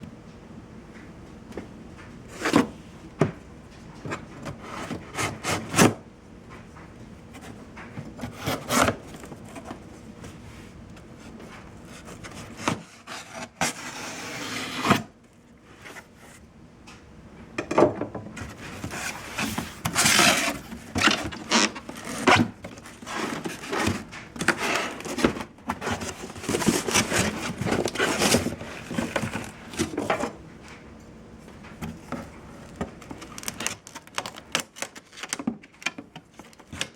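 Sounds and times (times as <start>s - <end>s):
rasping scrape: 11.9s - 15.0s.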